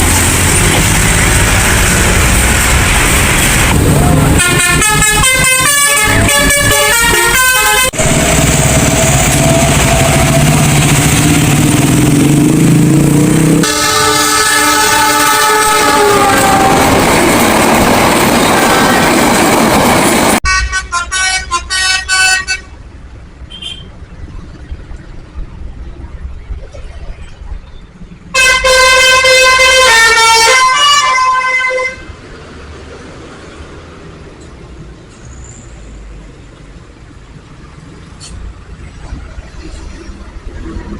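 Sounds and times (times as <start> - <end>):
traffic noise: 0.0 - 40.9
musical truck air horns: 3.4 - 10.8, 13.6 - 17.1, 20.4 - 22.8, 28.3 - 32.1
held horn chord: 13.6 - 17.0
horn sliding down in pitch: 13.6 - 17.1.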